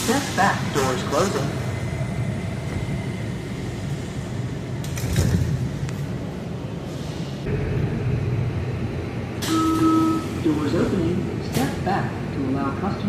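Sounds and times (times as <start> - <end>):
railcar rumble: 0.0 - 13.0.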